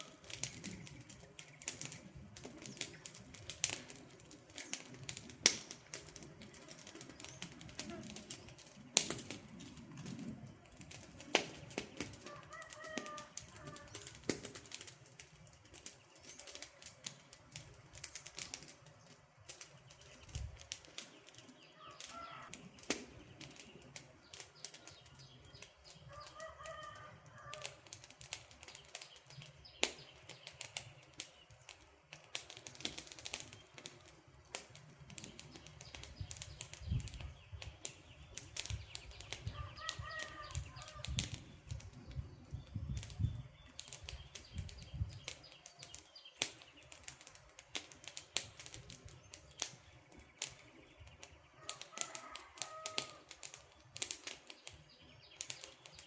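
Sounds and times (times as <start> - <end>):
campfire crackling and popping: 0.0 - 56.0
bird calling: 21.7 - 22.6, 39.0 - 41.2.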